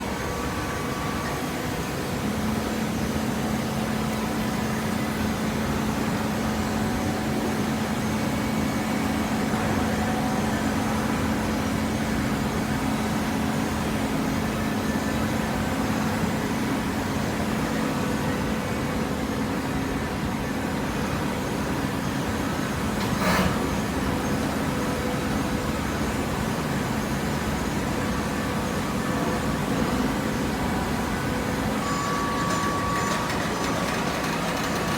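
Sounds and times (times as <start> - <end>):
baler machine hum: 0.0 - 34.9
machine clank: 31.8 - 34.9.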